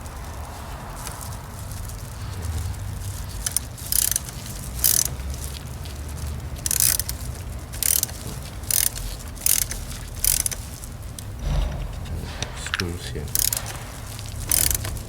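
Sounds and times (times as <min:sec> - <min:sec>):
ratchet clicking: 0:03.4 - 0:05.2, 0:06.6 - 0:11.7, 0:13.4 - 0:15.0.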